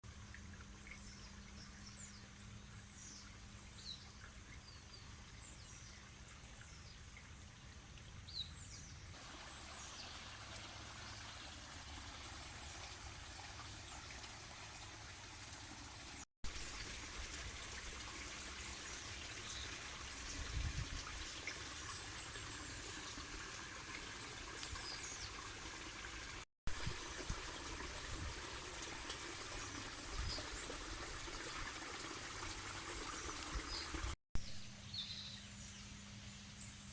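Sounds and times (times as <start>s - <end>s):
running water: 0.0s - 34.2s.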